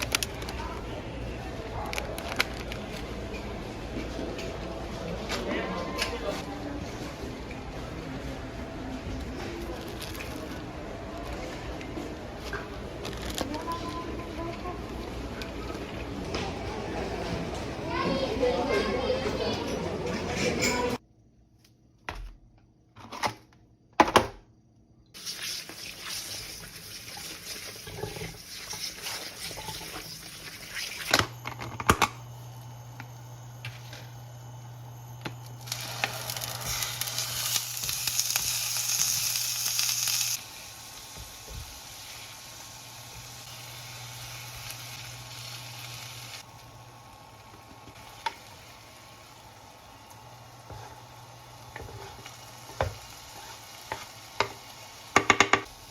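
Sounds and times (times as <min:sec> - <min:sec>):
hiss of sizzling or running water: 0:25.2 - 0:31.2, 0:35.6 - 0:55.9.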